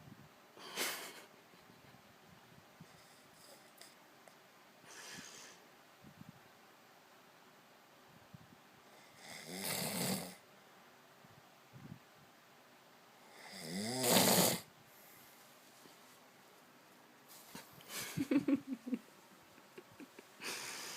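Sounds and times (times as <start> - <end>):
man snoring: 9.2 - 10.4, 13.3 - 14.7.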